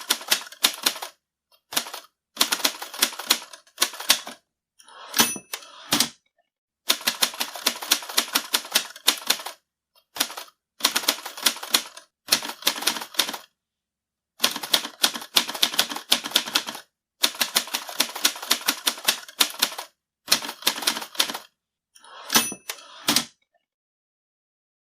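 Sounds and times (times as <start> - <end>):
typewriter keystrokes: 1.7 - 4.4, 6.9 - 9.6, 10.2 - 13.4, 14.4 - 21.5
typewriter bell ring: 5.1 - 5.7, 22.3 - 22.9.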